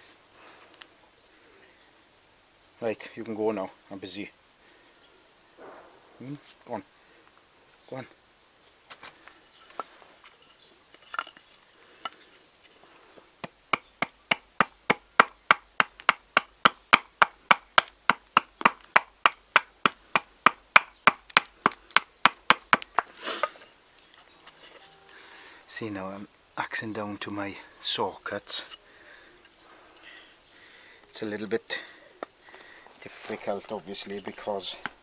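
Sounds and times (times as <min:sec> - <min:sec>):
axe chopping wood: 0:13.4 - 0:23.1.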